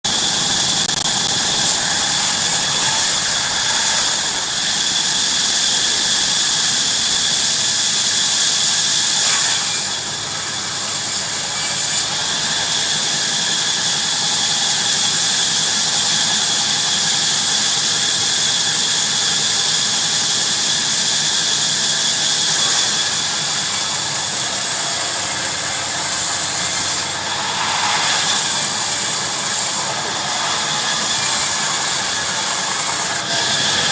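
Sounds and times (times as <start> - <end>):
bandsaw cutting wood: 0.0 - 33.9.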